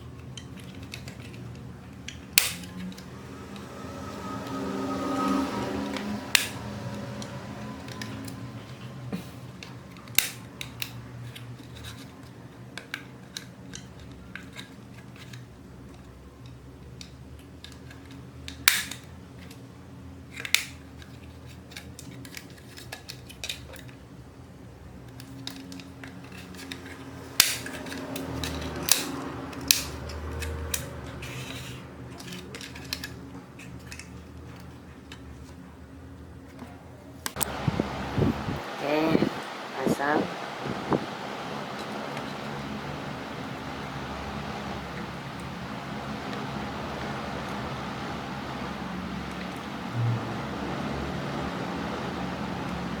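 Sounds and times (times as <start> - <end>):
low steady hum: 0.0 - 10.0, 32.1 - 53.0.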